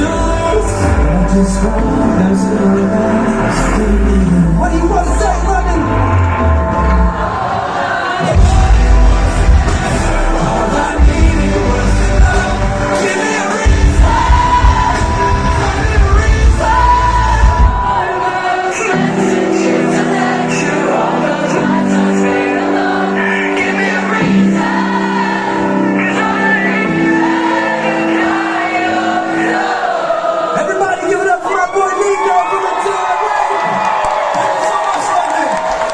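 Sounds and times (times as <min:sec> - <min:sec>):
voices singing: 0:05.9 - 0:31.3
heavy drums and bass: 0:08.2 - 0:13.0, 0:13.6 - 0:18.0
metalcore band playing live: 0:08.2 - 0:18.2.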